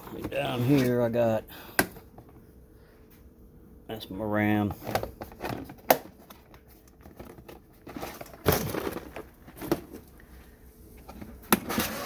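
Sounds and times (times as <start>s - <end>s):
rustling clatter: 4.8s - 10.1s
rustling: 5.3s - 10.2s.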